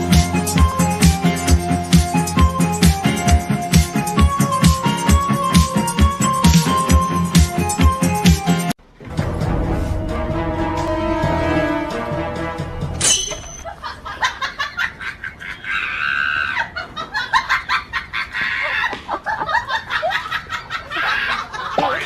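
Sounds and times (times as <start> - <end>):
background music: 0.0 - 13.6.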